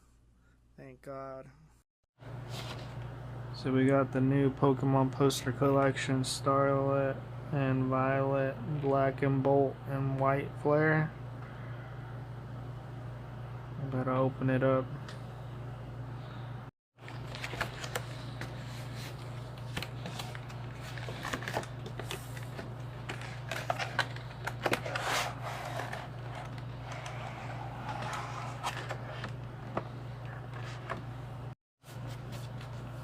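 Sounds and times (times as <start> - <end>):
steady low hum: 0.0 - 33.0
plastic and cardboard rustling: 17.0 - 31.0.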